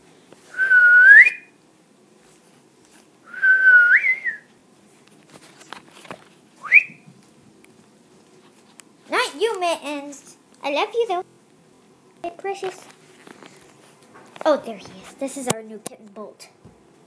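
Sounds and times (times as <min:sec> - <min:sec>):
person whistling: 0:00.5 - 0:01.5, 0:03.3 - 0:04.5, 0:06.6 - 0:07.0.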